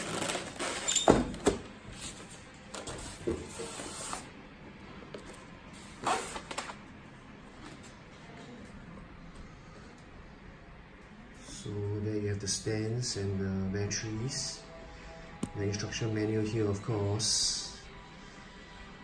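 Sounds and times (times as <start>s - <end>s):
packaging being handled: 0.0s - 1.0s.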